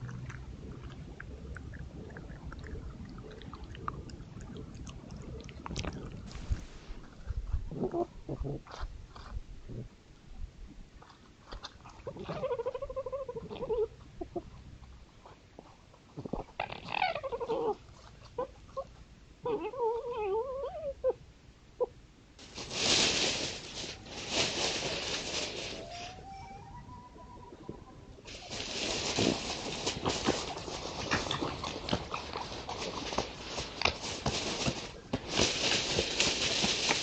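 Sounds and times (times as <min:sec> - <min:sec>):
foxes crying: 0:25.8 - 0:27.6.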